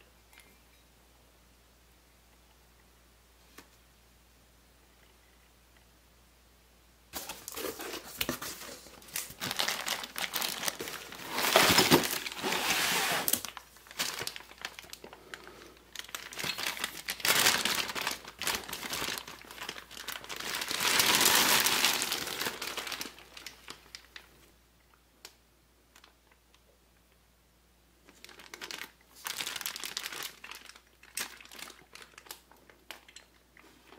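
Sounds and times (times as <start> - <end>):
packing material crinkling: 7.2 - 24.3, 28.0 - 33.9.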